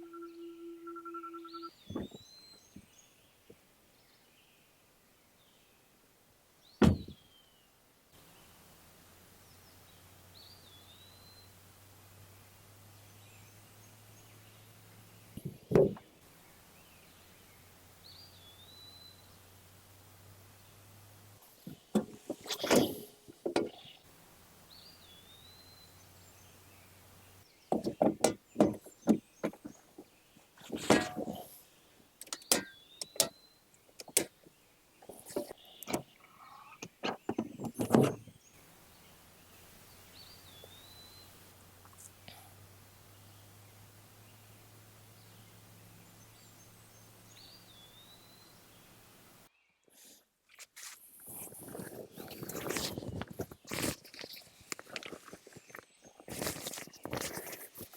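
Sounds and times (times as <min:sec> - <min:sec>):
dull thumps: 0:01.9 - 0:02.2, 0:06.8 - 0:07.2, 0:15.4 - 0:16.1, 0:27.7 - 0:31.6.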